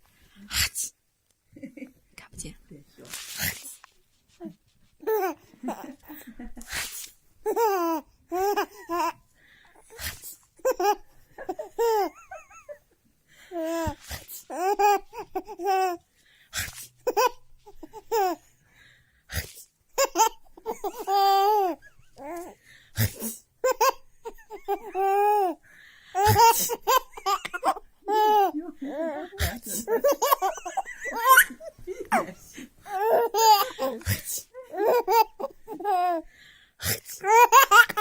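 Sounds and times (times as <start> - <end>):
adult sneezing: 0.5 - 1.0, 23.0 - 23.4, 33.9 - 34.6, 36.8 - 37.2
baby laughing: 5.0 - 6.7, 7.4 - 9.2, 10.6 - 12.8, 13.6 - 16.0, 17.0 - 18.5, 20.0 - 22.6, 23.6 - 25.6, 26.2 - 36.3, 37.2 - 38.0.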